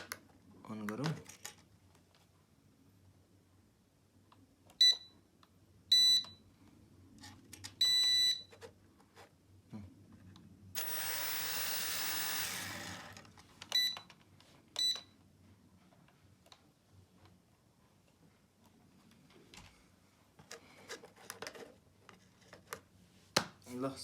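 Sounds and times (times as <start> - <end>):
small motors whirring: 10.8 - 13.3.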